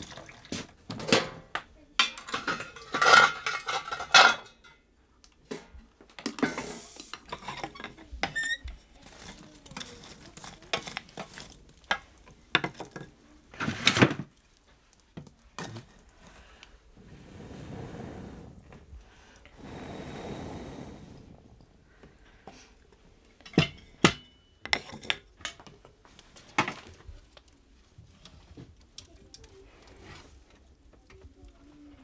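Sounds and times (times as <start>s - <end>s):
dishes and pots clattering: 0.0s - 4.9s, 5.5s - 14.3s, 23.4s - 27.0s.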